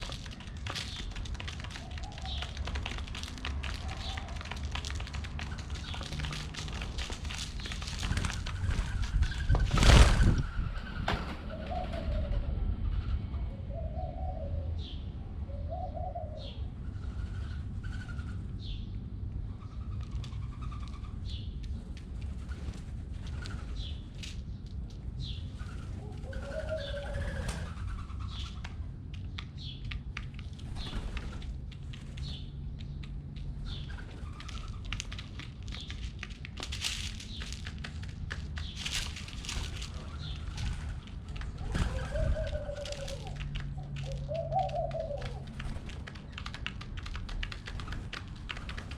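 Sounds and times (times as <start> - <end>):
small birds chirping: 0.0 - 12.2, 12.8 - 48.9
pigeons cooing: 0.0 - 18.4, 25.5 - 28.6, 38.2 - 48.9.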